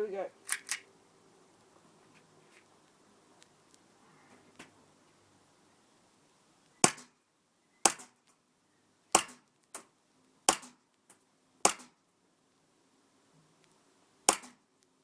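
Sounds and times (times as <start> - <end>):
airsoft pistol shots: 6.8 - 7.2, 7.9 - 8.2, 9.2 - 9.5, 10.5 - 10.8, 11.7 - 12.0, 14.3 - 14.6.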